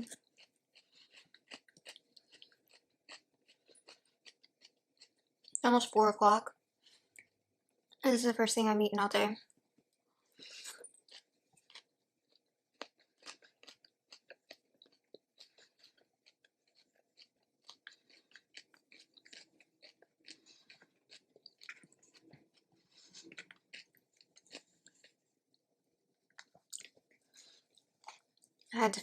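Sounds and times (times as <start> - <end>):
person chewing food: 0.0 - 5.7, 6.5 - 8.0, 9.4 - 28.7.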